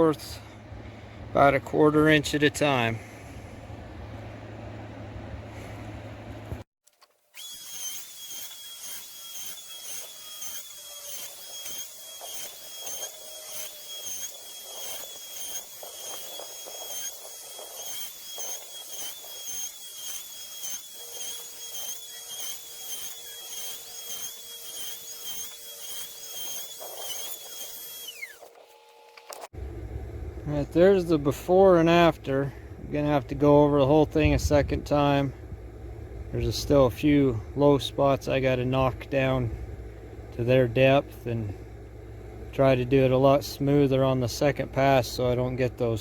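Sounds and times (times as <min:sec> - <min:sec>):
router whining through wood: 0:06.1 - 0:29.6.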